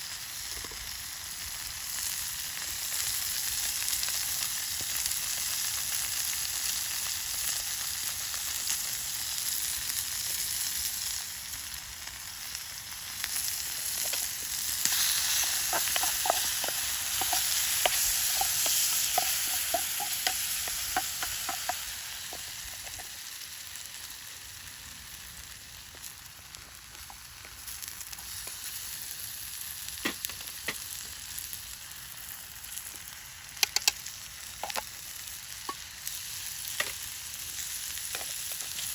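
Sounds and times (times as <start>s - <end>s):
food sizzling in frying pan: 0.0s - 38.9s
utensil clicking in pan: 14.0s - 23.2s, 33.6s - 34.0s, 34.6s - 34.9s.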